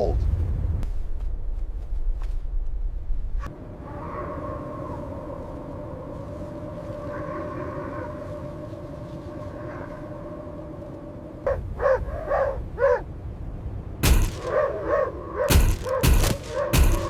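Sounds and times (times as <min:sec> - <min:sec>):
dogs barking: 0:11.4 - 0:13.1, 0:14.0 - 0:17.0.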